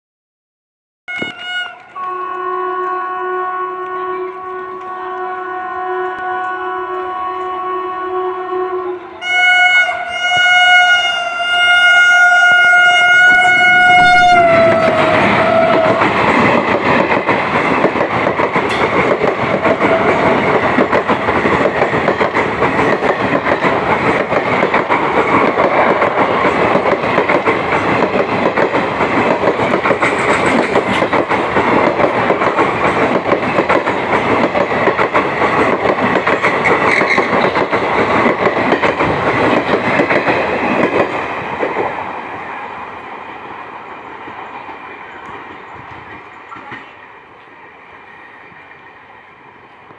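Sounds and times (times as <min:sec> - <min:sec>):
train horn blast: 0:01.1 - 0:16.1, 0:19.6 - 0:20.6
train wheels clattering on track: 0:13.2 - 0:42.4, 0:43.1 - 0:49.1.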